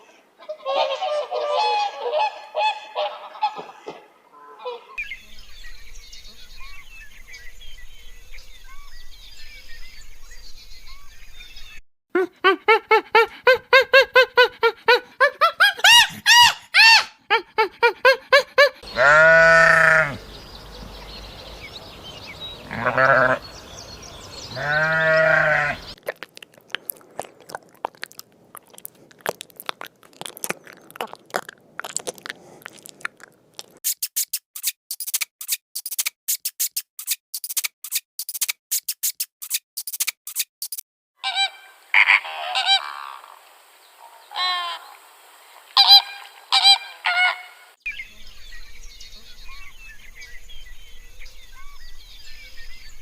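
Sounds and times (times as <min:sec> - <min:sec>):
animal calls: 0:12.2 - 0:33.8, 0:41.2 - 0:43.4
animal clicks and ticks: 0:26.0 - 0:40.8.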